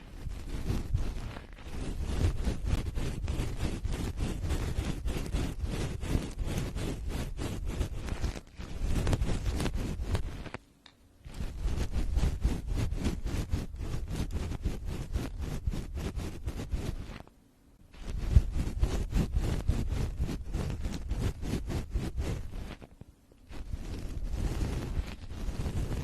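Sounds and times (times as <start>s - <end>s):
rhythmic rubbing on microphone: 0.0s - 10.6s, 11.2s - 26.0s.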